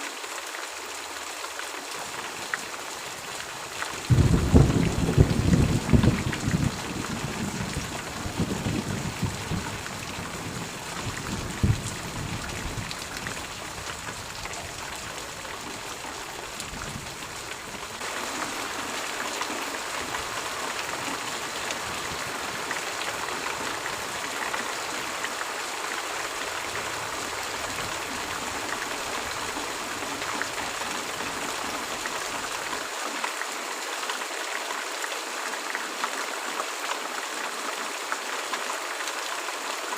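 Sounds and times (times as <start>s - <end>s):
steady rain: 0.0s - 39.9s
thunder rumbling: 4.1s - 14.0s.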